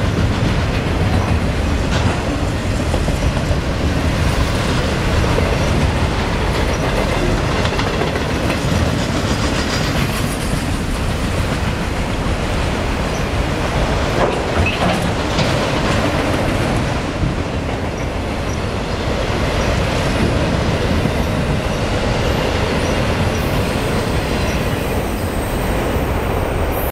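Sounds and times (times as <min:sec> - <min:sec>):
train wheels clacking on rails: 0:00.0 - 0:26.9
train wheel squeal: 0:06.6 - 0:07.5, 0:14.3 - 0:15.0, 0:21.0 - 0:26.9.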